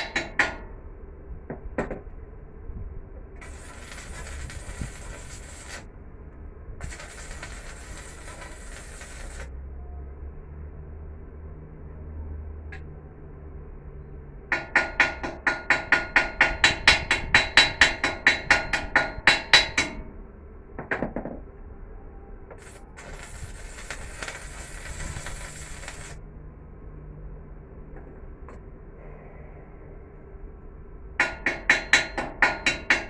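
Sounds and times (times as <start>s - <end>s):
steady hiss: 3.4s - 5.9s, 22.6s - 26.2s
hammer striking steel: 31.2s - 33.0s.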